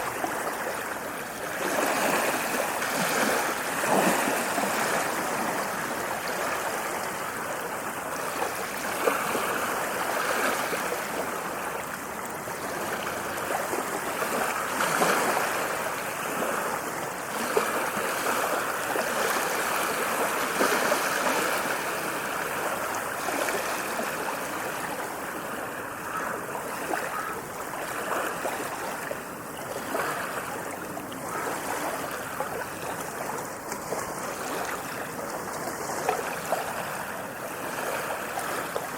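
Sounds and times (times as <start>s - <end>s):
ocean waves washing: 0.0s - 38.9s.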